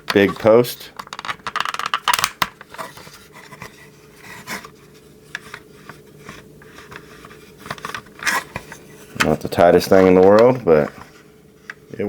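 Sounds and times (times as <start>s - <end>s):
plastic toy parts clicking: 1.0s - 2.6s.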